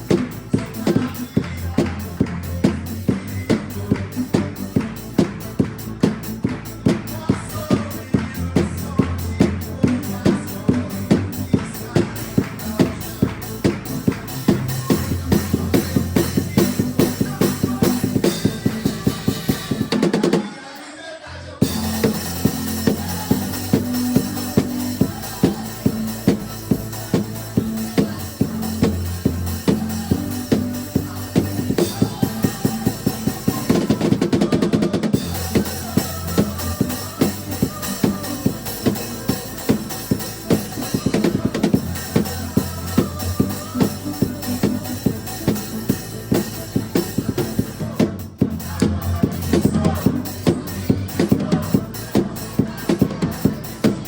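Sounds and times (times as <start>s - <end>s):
band with bass and guitar: 0.0s - 20.6s, 21.4s - 54.0s
drum kit playing: 0.0s - 20.6s, 21.6s - 54.0s.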